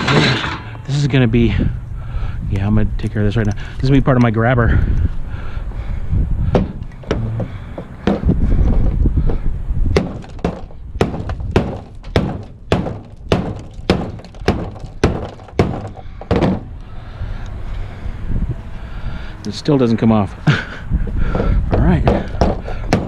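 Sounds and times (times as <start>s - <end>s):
handling noise: 0.0s - 1.0s, 6.5s - 16.7s
hard metal thunks: 0.0s - 1.7s, 6.4s - 16.8s, 21.2s - 23.0s.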